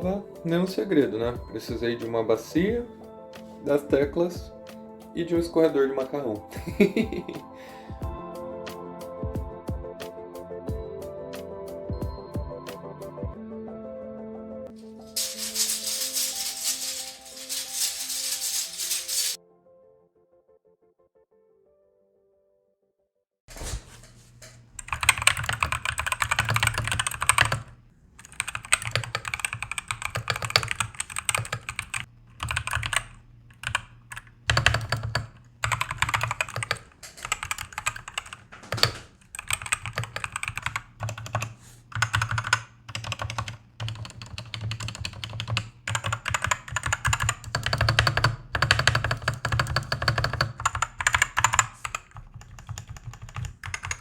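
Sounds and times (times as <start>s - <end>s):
mechanical keyboard typing: 24.8s - 54.0s.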